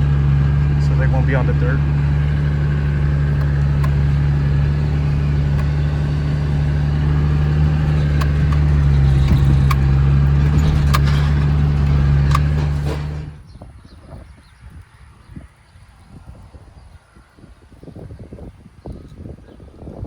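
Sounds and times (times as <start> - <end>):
vehicle engine running: 0.0 - 13.5.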